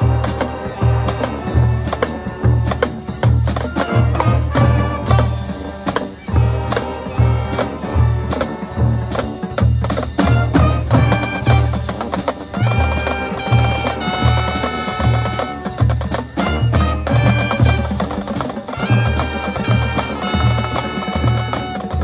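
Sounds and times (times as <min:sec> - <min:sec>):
marching band playing: 0:00.0 - 0:22.0.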